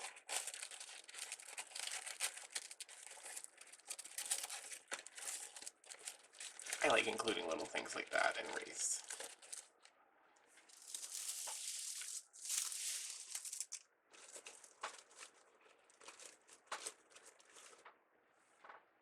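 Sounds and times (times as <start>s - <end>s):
craft materials rustling: 0.0s - 18.8s
short crinkles and clicks: 0.0s - 18.9s.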